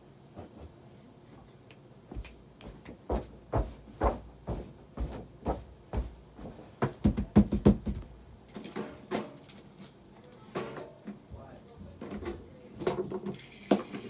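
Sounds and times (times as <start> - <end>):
short knocks and thumps: 2.1 - 8.1.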